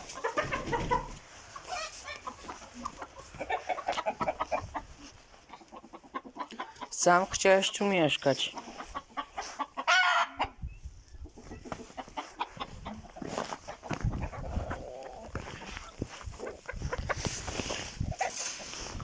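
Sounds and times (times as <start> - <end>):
chickens clucking: 0.0 - 19.0
rustling: 15.3 - 19.0.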